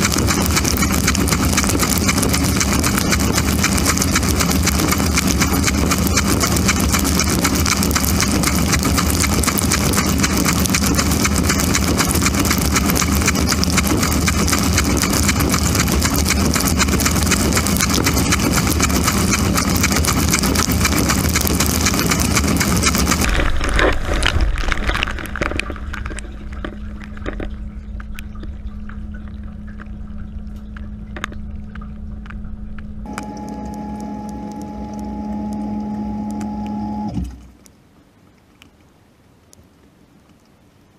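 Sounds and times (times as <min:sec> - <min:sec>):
higher hum: 0:00.0 - 0:37.5
motor hum: 0:00.0 - 0:37.7
water drips: 0:24.3 - 0:40.6.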